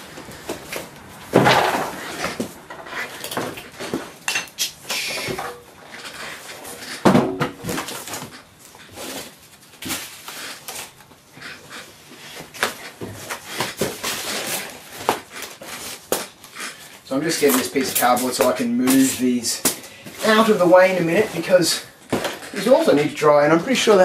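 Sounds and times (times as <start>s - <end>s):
objects knocking and clattering: 0.5s - 4.6s, 7.0s - 8.3s.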